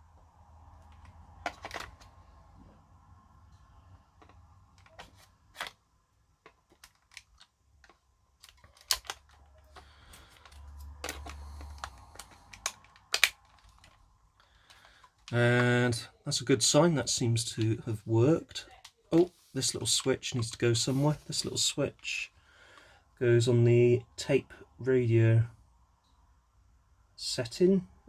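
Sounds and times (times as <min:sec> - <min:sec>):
plastic clicks and taps: 0:06.4 - 0:14.0.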